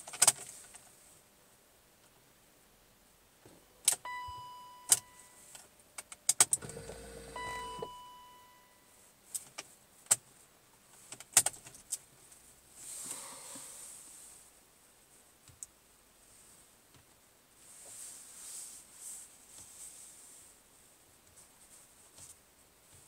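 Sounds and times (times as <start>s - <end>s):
warning chimes: 7.3s - 8.8s.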